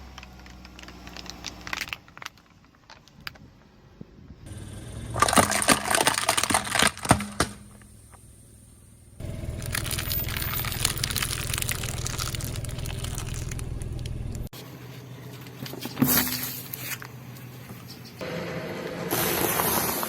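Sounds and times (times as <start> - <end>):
tyre crushing objects: 5.2 - 7.8, 15.5 - 17.7
low engine hum: 7.6 - 16.0.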